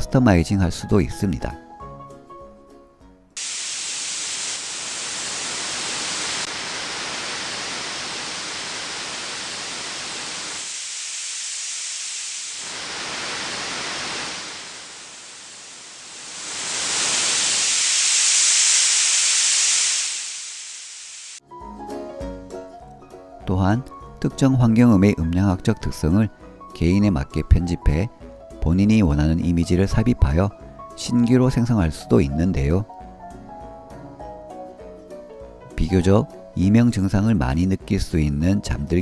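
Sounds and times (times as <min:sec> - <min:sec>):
steady masking hiss: 0:03.4 - 0:21.4.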